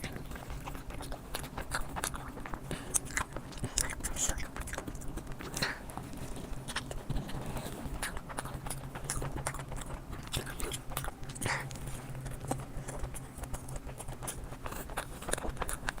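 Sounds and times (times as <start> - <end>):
steady low hum: 0.0 - 16.0
wet chewing: 0.0 - 16.0.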